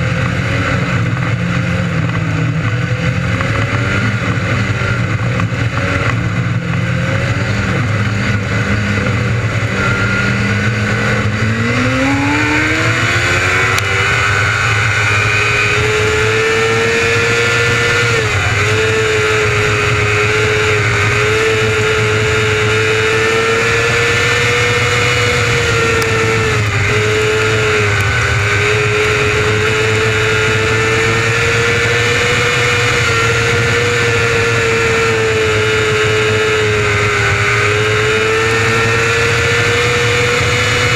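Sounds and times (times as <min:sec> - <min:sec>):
race engine revving: 0:00.0 - 0:40.9.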